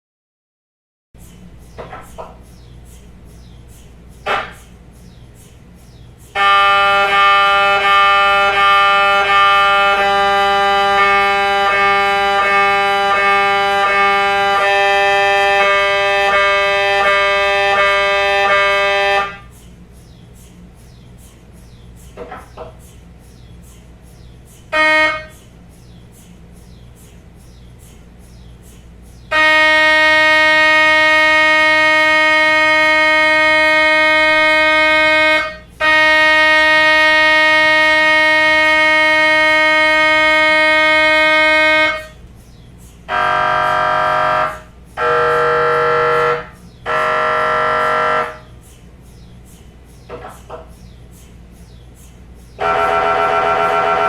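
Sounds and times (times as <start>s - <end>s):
steady low hum: 1.2s - 54.0s
mri scanner buzzing: 43.1s - 48.5s.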